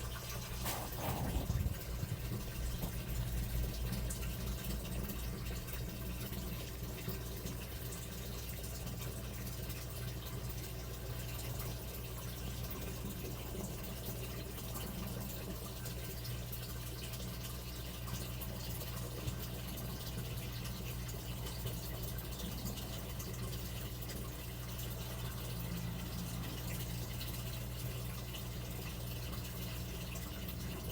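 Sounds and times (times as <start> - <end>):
water pouring and splashing: 0.0 - 7.8
low steady hum: 0.0 - 30.9.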